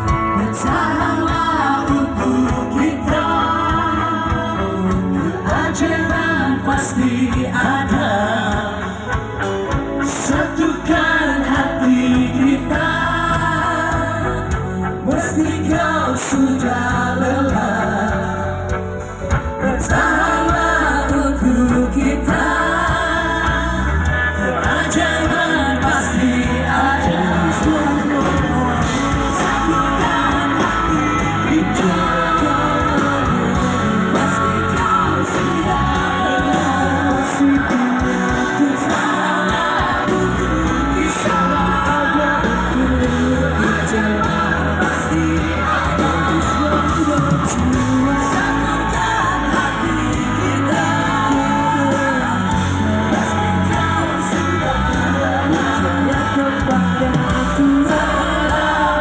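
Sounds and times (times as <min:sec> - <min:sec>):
rock band playing live: 0:00.0 - 0:59.0
voices singing: 0:00.0 - 0:59.0.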